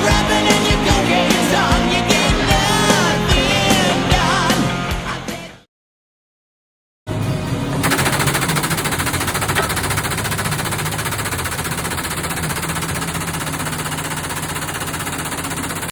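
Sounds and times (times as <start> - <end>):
welding arc crackling: 7.8 - 15.9
welding machine hum: 7.8 - 15.9.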